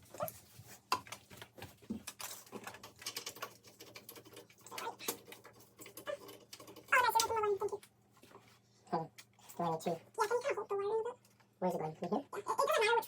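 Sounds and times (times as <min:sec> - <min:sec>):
hands handling wires and parts: 0:00.0 - 0:09.4.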